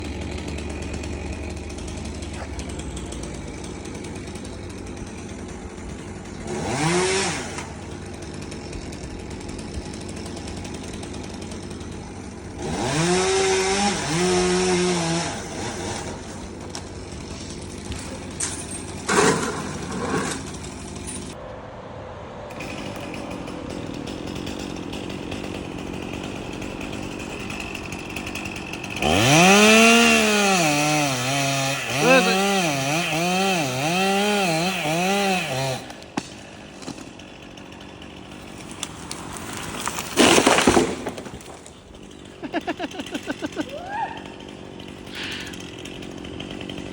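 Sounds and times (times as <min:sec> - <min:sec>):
chainsaw idling and revving: 0:00.0 - 0:21.4, 0:22.5 - 0:46.9.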